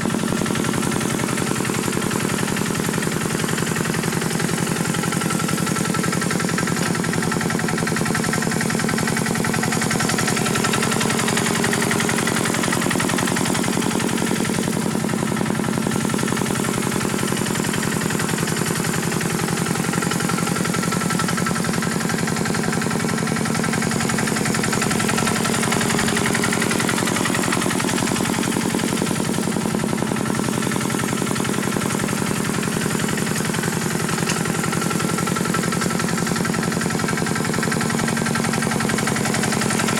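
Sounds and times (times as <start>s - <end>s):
rapid engine knock: 0.0s - 39.9s
tractor engine running: 0.0s - 39.9s.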